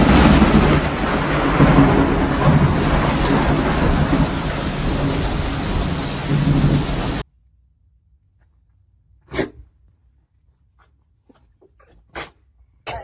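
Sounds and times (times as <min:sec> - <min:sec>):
loud steady rushing noise: 0:00.0 - 0:07.2
low rumble: 0:00.0 - 0:07.2.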